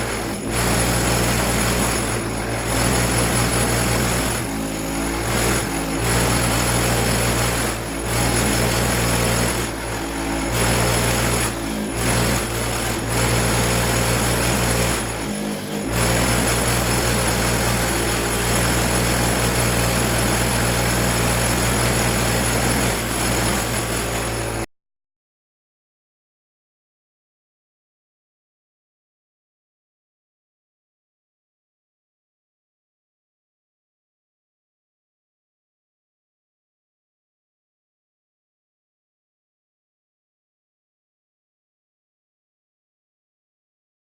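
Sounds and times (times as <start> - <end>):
motor-driven wire wheel running: 0.0 - 24.7.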